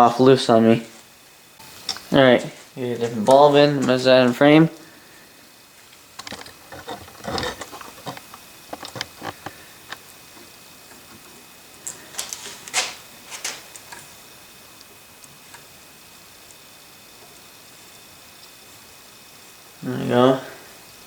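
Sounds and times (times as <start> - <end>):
hands clicking and scraping parts: 6.2 - 10.0.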